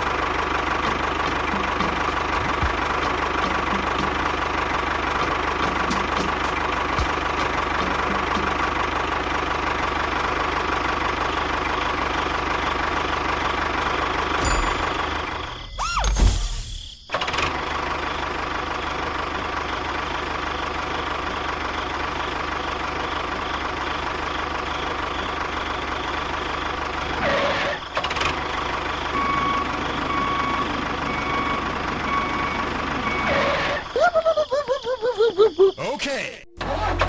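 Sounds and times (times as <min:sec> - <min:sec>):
small machine running: 0:13.6 - 0:27.9.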